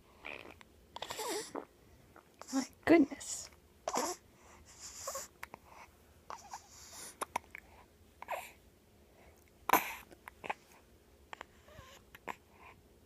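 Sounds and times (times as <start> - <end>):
small clicks and breaths: 9.1 - 10.8.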